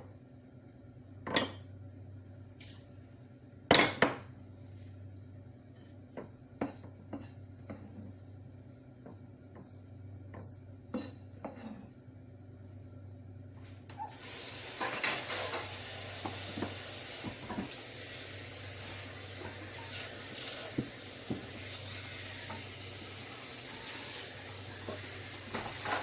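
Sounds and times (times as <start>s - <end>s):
food sizzling in hot oil: 14.1s - 26.0s
pot and metal utensils clinking: 14.8s - 16.7s.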